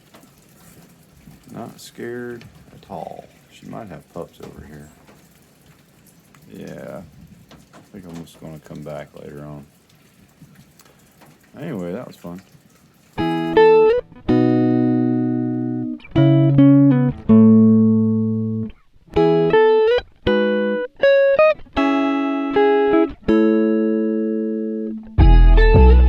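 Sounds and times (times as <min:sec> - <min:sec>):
plucked guitar: 0:13.2 - 0:26.0.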